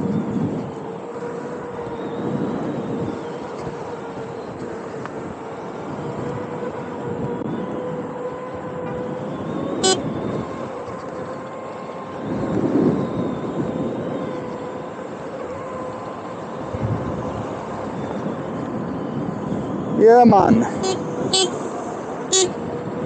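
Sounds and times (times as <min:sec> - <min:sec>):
electric unicycle whine: 0:00.0 - 0:23.0
traffic rush: 0:00.0 - 0:23.0
hand-held horn toot: 0:09.7 - 0:10.4, 0:20.7 - 0:22.7.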